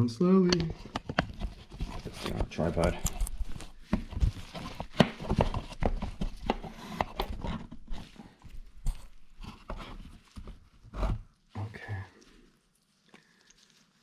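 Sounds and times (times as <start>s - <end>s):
camera handling: 0.6s - 8.0s.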